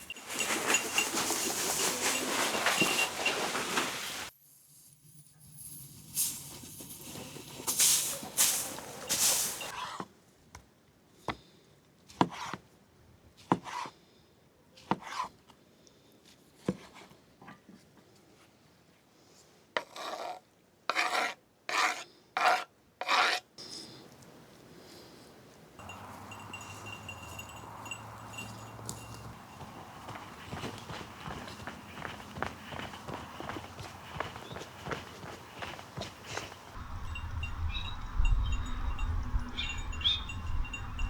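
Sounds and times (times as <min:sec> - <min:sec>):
rasping scrapes of hard objects: 0:19.8 - 0:23.5.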